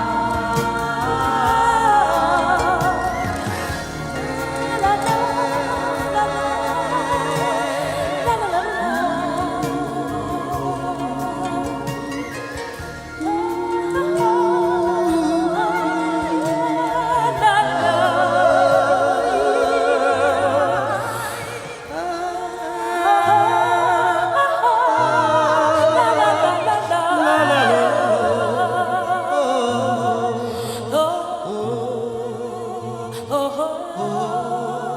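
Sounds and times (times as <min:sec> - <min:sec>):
steady bass: 0:00.0 - 0:19.6
sung vocal line: 0:00.0 - 0:34.9.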